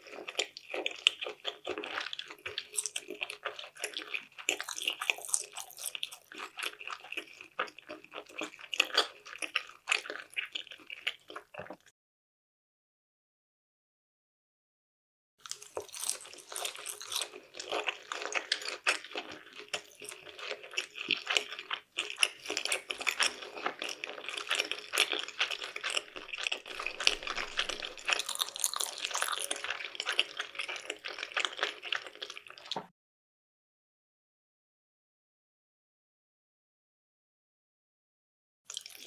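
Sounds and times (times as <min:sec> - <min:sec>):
wet chewing sounds: 0:00.0 - 0:11.9, 0:15.4 - 0:32.9, 0:38.7 - 0:39.0.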